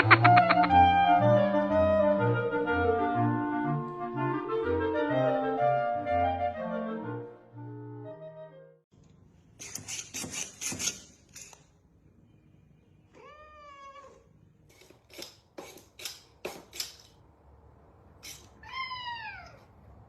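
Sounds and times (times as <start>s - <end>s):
cat meowing: 13.1s - 14.3s, 18.5s - 19.7s.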